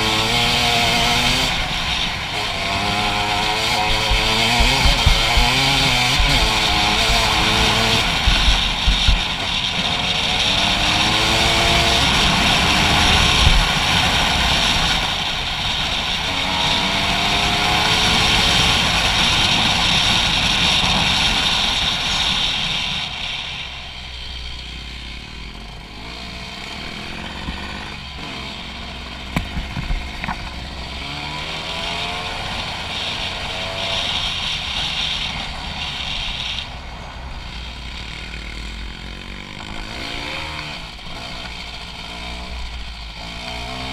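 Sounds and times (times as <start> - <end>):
wind rushing over microphone: 0.0 - 23.6
dirt bike engine accelerating: 0.0 - 43.9.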